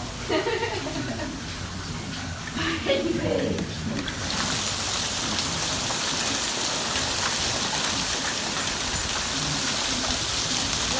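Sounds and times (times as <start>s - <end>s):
heavy rain pouring: 2.5s - 10.9s
raindrops ticking: 3.5s - 10.9s.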